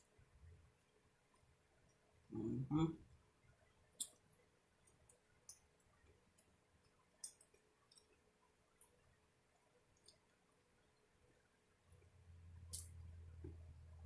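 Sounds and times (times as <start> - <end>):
faint eating clicks: 3.9 - 11.1.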